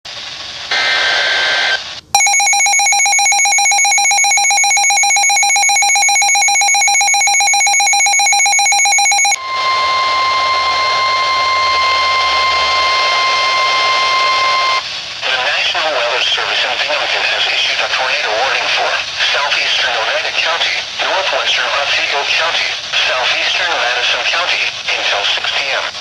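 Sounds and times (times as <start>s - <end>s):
data header burst: 2.2s - 14.8s
pulsing electronic alarm tone: 2.2s - 14.8s
steady warning tone: 2.2s - 14.8s.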